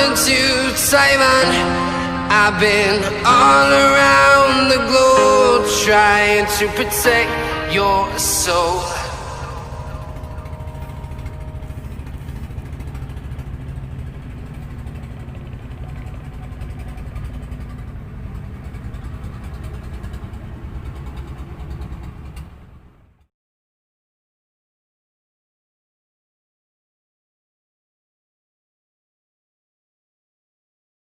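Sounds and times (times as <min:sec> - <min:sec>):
boat engine running: 0:00.0 - 0:23.2.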